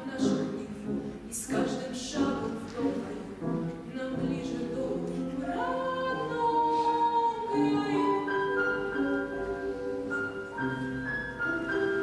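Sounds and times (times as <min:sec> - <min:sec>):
instrumental accompaniment: 0:00.0 - 0:12.0.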